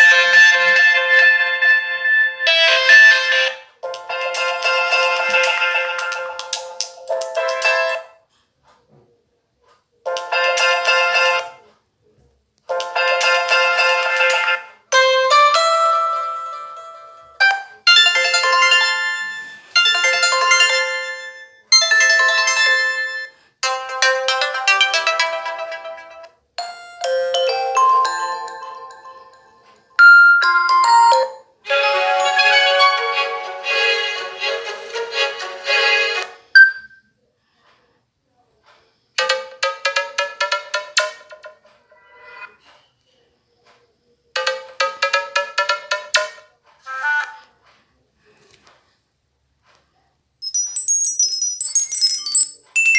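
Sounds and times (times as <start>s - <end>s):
phone ringtone melody: 0.0s - 6.5s, 12.9s - 33.5s, 36.6s - 37.0s, 50.4s - 52.9s
short sharp beep: 36.6s - 37.0s.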